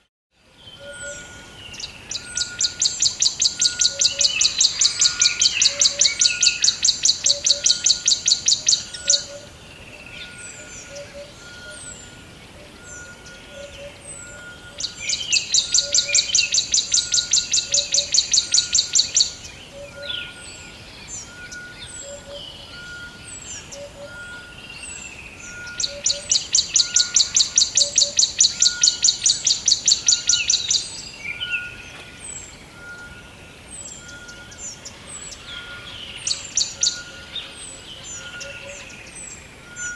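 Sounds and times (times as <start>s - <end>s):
birds chirping: 0.6s - 39.9s.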